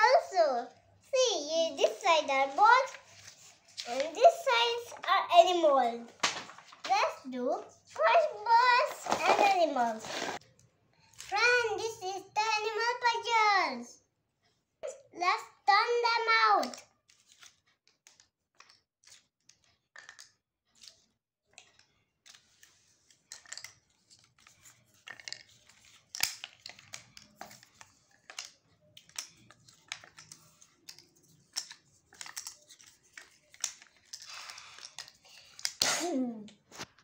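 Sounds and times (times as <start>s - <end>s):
puzzle pieces clicking and tapping: 17.9s - 35.8s.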